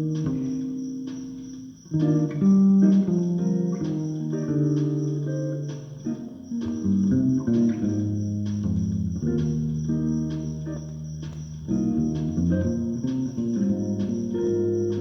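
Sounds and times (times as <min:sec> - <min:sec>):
bass guitar plucked notes: 0:06.7 - 0:15.0.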